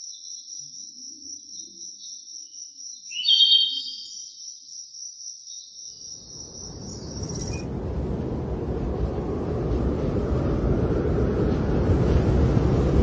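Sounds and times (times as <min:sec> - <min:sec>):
high-pitched insect trill: 0:00.0 - 0:07.7
low rushing noise: 0:06.2 - 0:13.0
short bird-like chirp: 0:06.4 - 0:07.7.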